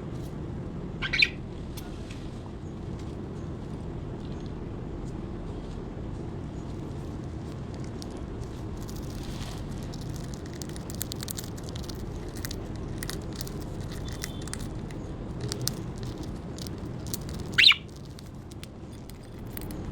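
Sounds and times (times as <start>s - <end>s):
low steady hum: 0.0s - 19.9s
budgie chirp: 1.0s - 1.4s, 13.8s - 18.0s
budgerigars cracking seeds: 6.6s - 19.9s.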